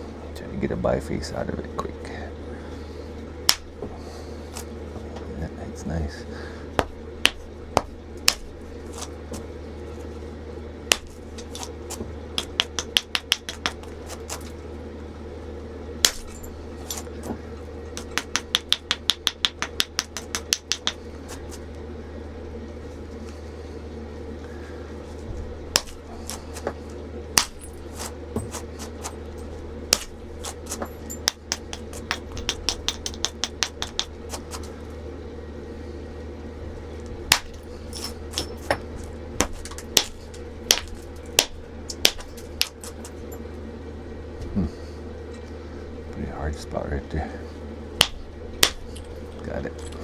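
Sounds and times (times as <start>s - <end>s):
stone knapping clicks: 3.5s - 3.7s, 6.8s - 9.1s, 10.9s - 11.7s, 12.4s - 14.4s, 18.0s - 21.5s, 25.8s - 26.7s, 29.9s - 34.7s, 37.3s - 38.7s, 39.4s - 43.2s, 48.0s - 49.1s.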